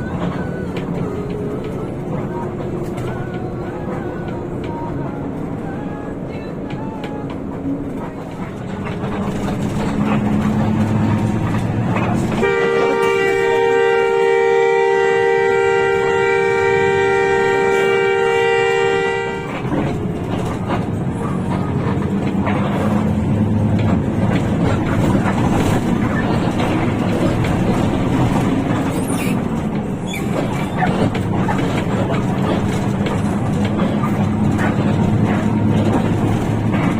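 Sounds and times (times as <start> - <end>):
bus running: 0.0 - 36.9
loud horn blowing: 12.1 - 19.9.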